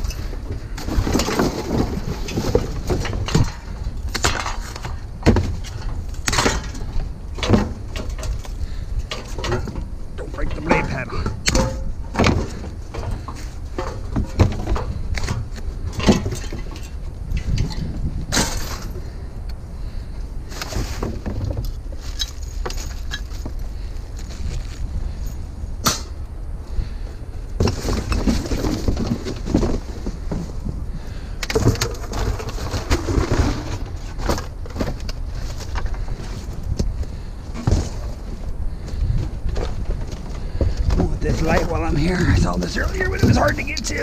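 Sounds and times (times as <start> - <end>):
scrap metal knocks and clunks: 0.0 - 19.2
rustling and clattering scrap: 0.0 - 26.2, 27.6 - 44.0
steady low rumble: 0.0 - 33.1, 33.8 - 44.0.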